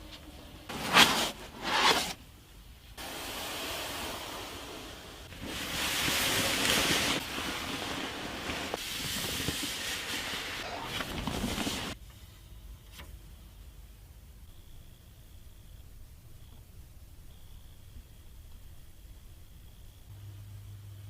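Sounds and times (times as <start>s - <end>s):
packaging rubbing and scraping: 5.4s - 12.0s.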